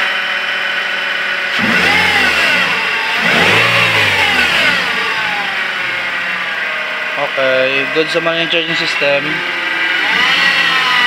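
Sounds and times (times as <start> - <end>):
car engine revving: 0.3 - 11.0.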